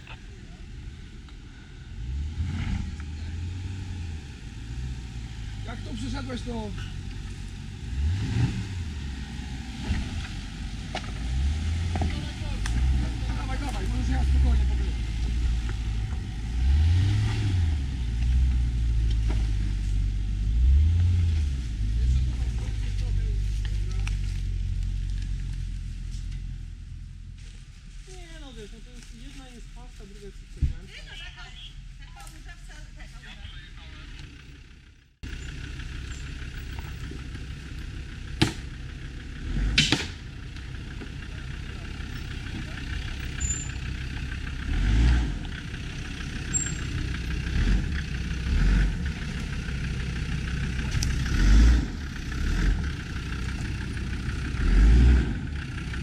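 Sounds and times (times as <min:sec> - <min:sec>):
vehicle engine revving: 0:00.0 - 0:30.6, 0:31.6 - 0:56.0.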